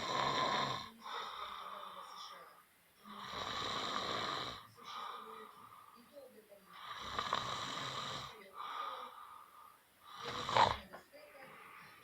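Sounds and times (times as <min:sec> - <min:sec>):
person snoring: 0:00.0 - 0:02.0, 0:03.1 - 0:05.3, 0:06.8 - 0:10.9.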